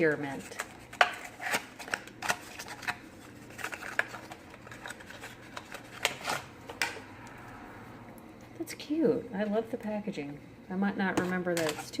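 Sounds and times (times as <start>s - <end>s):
packaging rustling and crinkling: 0.3s - 6.8s.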